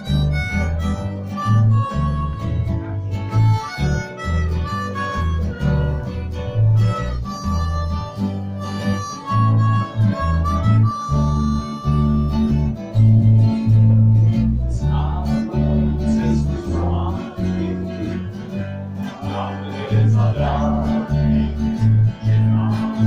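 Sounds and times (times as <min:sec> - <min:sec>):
acoustic guitar: 0:00.0 - 0:23.0
harmonica melody: 0:00.0 - 0:23.0
low bass line: 0:00.0 - 0:23.0.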